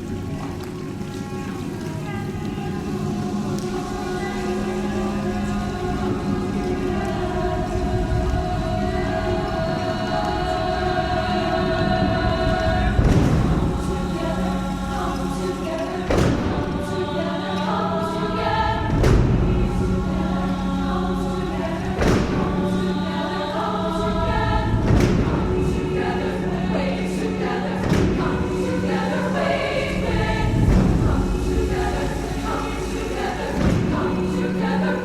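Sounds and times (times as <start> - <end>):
choir singing: 0.0 - 35.0
loud sharp thumps: 24.8 - 25.5.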